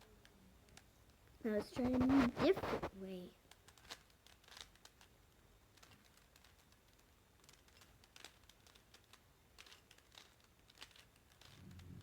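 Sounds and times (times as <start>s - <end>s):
puzzle cube layers clicking: 3.5s - 5.1s, 5.7s - 12.0s.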